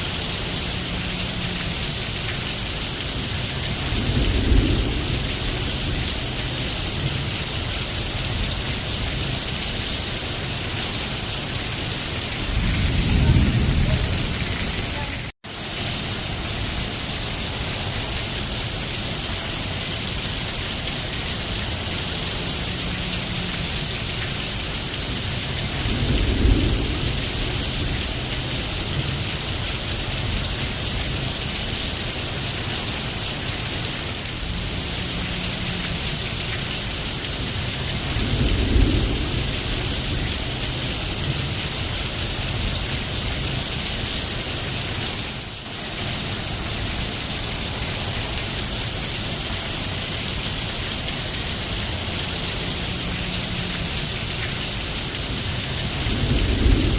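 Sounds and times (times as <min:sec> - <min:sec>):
heavy rain hissing: 0:00.0 - 0:56.9
thunder rumble: 0:03.2 - 0:09.3, 0:10.7 - 0:15.3, 0:25.0 - 0:31.2, 0:37.4 - 0:43.5, 0:55.5 - 0:56.9.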